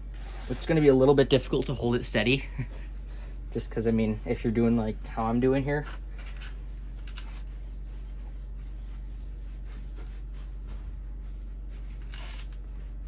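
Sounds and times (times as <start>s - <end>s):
low electrical hum: 0.0s - 13.0s
cloth rubbing on glass: 2.2s - 13.0s
cloth swish: 7.3s - 13.0s.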